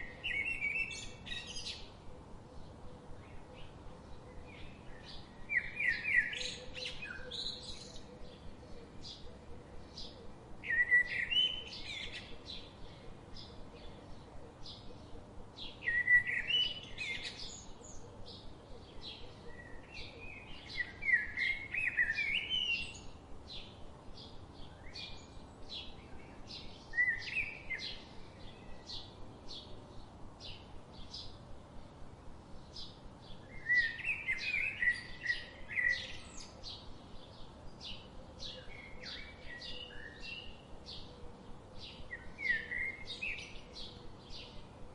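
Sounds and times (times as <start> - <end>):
bird warbling song: 0.0 - 31.4, 32.6 - 44.9.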